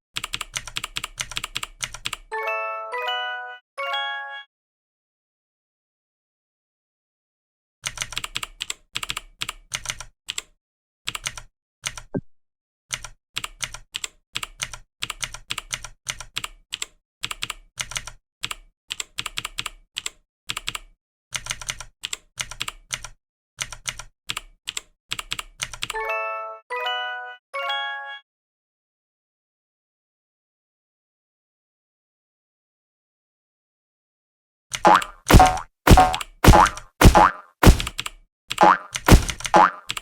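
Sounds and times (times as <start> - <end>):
computer keyboard typing: 0.2 - 2.2, 7.8 - 10.5, 11.1 - 12.0, 21.4 - 25.9.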